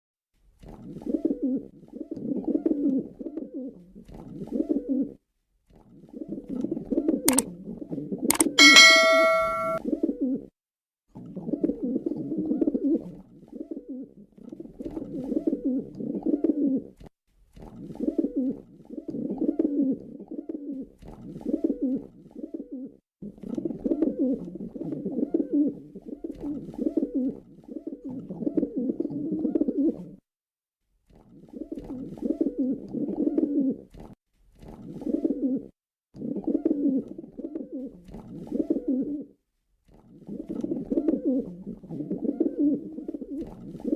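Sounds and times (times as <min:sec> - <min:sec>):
pigeon cooing: 0:35.0 - 0:39.3, 0:40.2 - 0:43.9.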